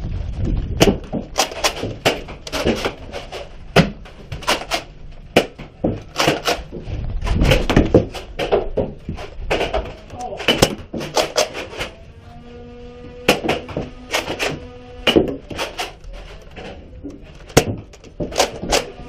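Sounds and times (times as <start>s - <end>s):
low rumbling: 0.0s - 19.0s
sharp clicks and knocks: 13.3s - 19.0s.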